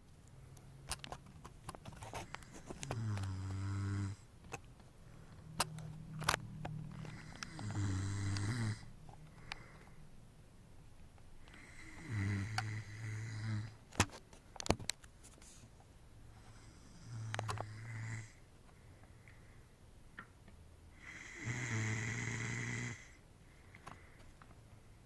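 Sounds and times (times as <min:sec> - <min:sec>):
man snoring: 0:02.9 - 0:04.2, 0:07.1 - 0:08.9, 0:11.6 - 0:13.8, 0:16.5 - 0:18.4, 0:21.0 - 0:23.2.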